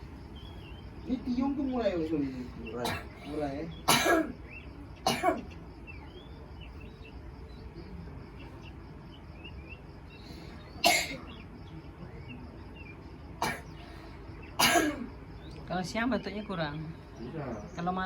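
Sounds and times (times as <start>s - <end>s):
child coughing: 2.8s - 3.3s, 3.9s - 4.4s, 5.0s - 5.5s, 10.8s - 11.3s, 13.4s - 13.7s, 14.6s - 15.1s.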